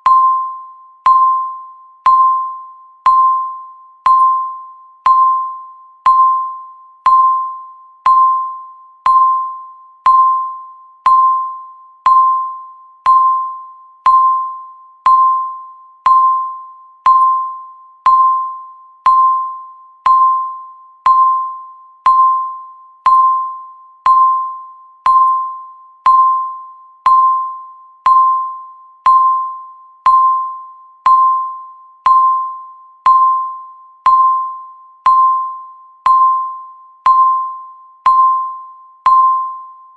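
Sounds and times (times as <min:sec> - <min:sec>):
timer electronic beeps: 0:00.0 - 0:39.9.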